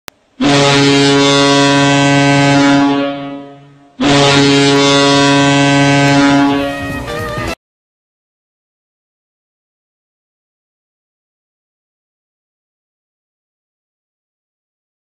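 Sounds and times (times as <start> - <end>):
goal horn blasts: 0.4 - 7.6.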